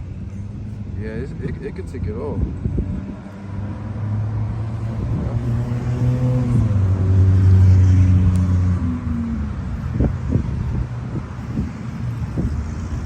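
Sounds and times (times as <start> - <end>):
vehicle engine passing by: 2.7 - 13.0.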